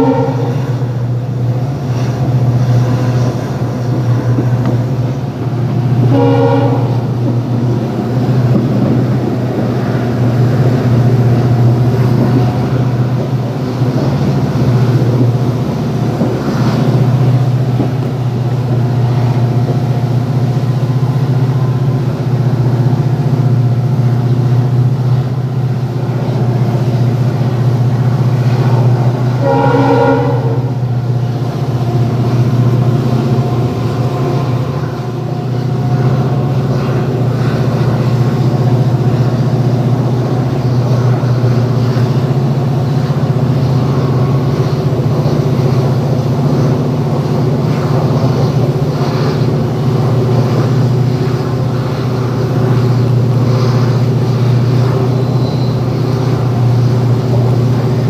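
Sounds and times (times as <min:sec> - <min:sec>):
train horn: 0:00.0 - 0:01.2, 0:05.9 - 0:07.4, 0:28.3 - 0:31.2, 0:47.4 - 0:58.0
diesel locomotive engine drone: 0:00.0 - 0:58.0.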